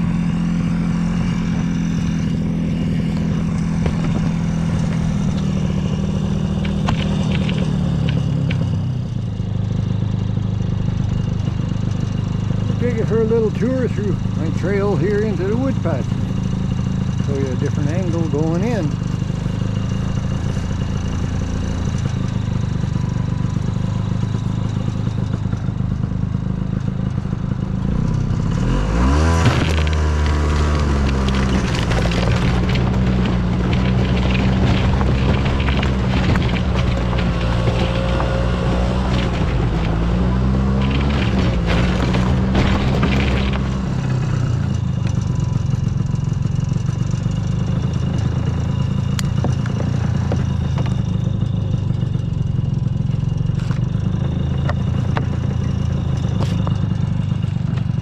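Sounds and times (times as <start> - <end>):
snowmobile engine revving: 12.6 - 19.0, 27.8 - 44.6.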